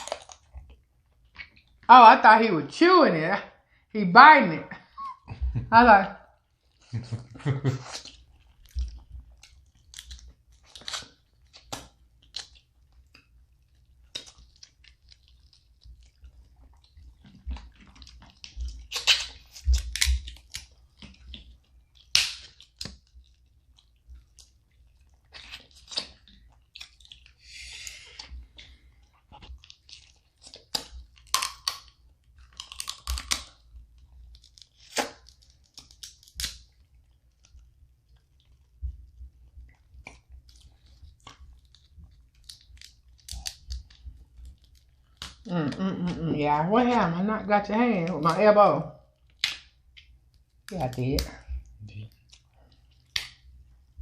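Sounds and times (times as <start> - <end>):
crab shells cracking: 0.0 - 1.7, 7.8 - 38.8, 39.8 - 45.5, 49.2 - 53.9
chewing: 0.0 - 1.9, 6.4 - 46.2, 49.0 - 54.0.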